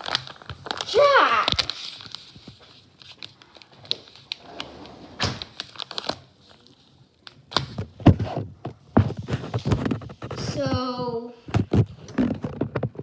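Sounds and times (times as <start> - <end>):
plastic packaging crinkling: 0.0 - 4.5, 5.4 - 8.1.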